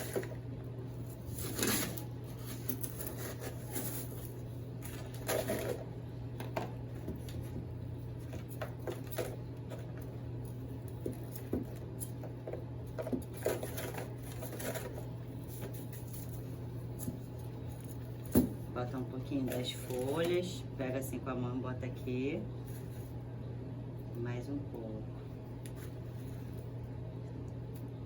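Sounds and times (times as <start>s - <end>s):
steady low hum: 0.0s - 28.0s
soil and cardboard rustling: 1.0s - 5.9s, 10.8s - 20.6s.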